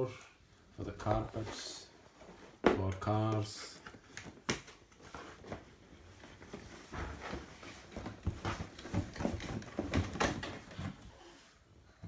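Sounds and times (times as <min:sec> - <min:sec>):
plastic parts clicking and knocking: 0:07.4 - 0:10.9.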